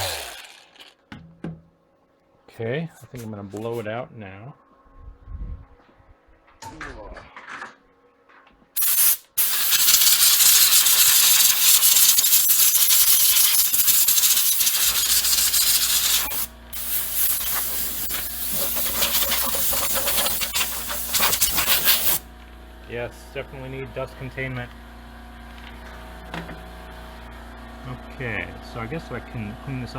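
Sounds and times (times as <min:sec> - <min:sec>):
compressed air hissing: 0:08.8 - 0:22.3.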